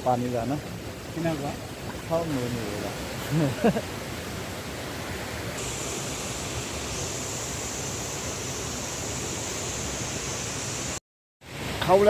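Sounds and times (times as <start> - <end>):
river water rushing: 0.0 - 12.0
thin high-pitched hiss: 5.6 - 11.0.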